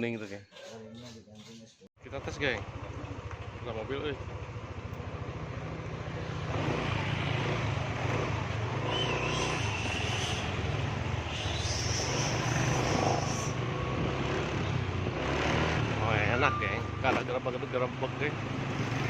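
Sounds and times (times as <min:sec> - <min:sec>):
scooter engine running: 0:02.1 - 0:11.3.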